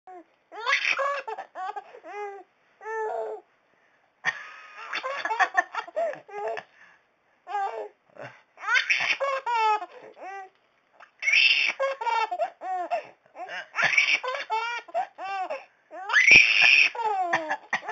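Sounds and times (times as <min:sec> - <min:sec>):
baby laughing: 0:00.5 - 0:01.9, 0:04.7 - 0:06.7, 0:08.6 - 0:17.9.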